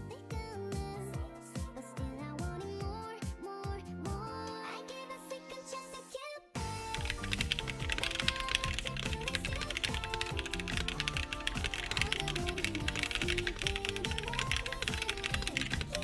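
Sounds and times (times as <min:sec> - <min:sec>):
mechanical keyboard typing: 0:06.9 - 0:16.0.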